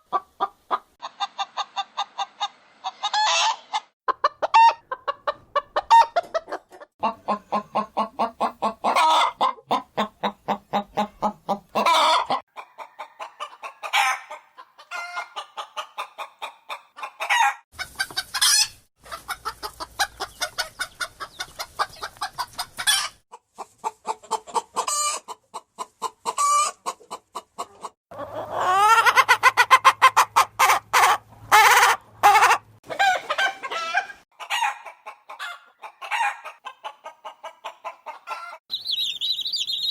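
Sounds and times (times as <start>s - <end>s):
chickens clucking: 0.0s - 39.9s
loud chicken calls: 1.0s - 5.0s, 5.7s - 23.2s, 26.3s - 39.9s.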